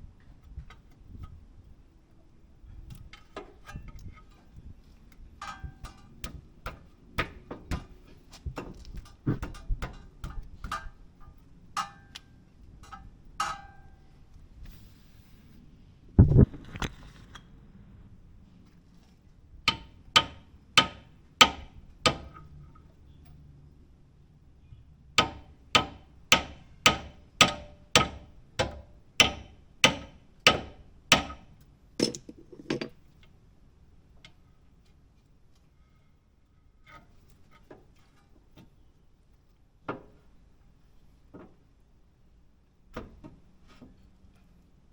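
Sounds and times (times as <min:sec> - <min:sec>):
hammer striking steel: 0:19.7 - 0:22.3, 0:25.2 - 0:31.4.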